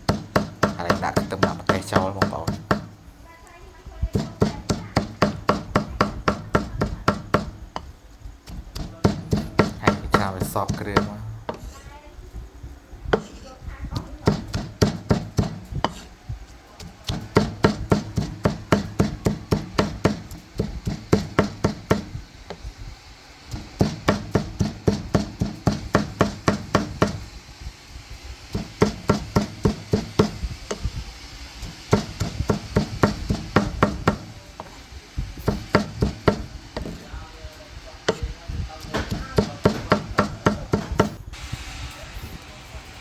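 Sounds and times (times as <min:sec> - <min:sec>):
cleaver chopping on wooden board: 0:00.0 - 0:03.0, 0:04.1 - 0:07.9, 0:08.5 - 0:11.8, 0:13.1 - 0:13.4, 0:14.0 - 0:16.2, 0:16.8 - 0:22.6, 0:23.5 - 0:27.3, 0:28.5 - 0:30.9, 0:31.6 - 0:37.1, 0:38.1 - 0:41.2.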